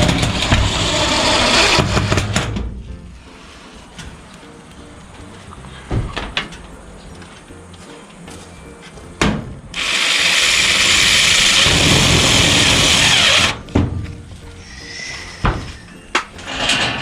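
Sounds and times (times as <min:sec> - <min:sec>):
power tool running: 0:09.8 - 0:13.6.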